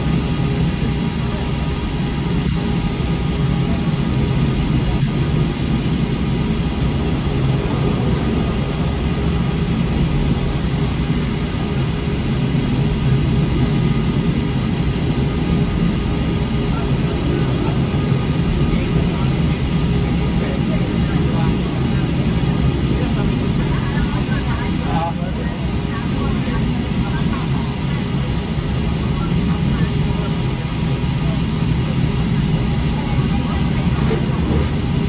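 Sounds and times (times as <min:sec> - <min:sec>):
funicular tram rumbling: 0:06.9 - 0:11.2, 0:32.4 - 0:35.0.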